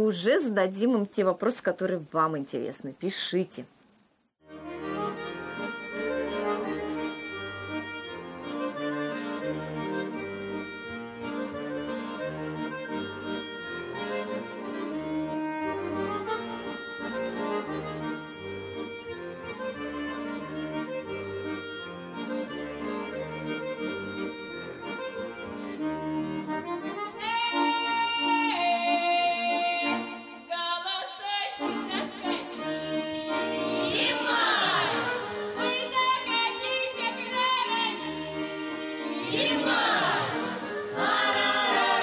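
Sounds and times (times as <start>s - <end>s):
accordion playing folk tune: 4.4s - 42.0s
children singing held notes: 33.3s - 36.0s, 38.7s - 42.0s.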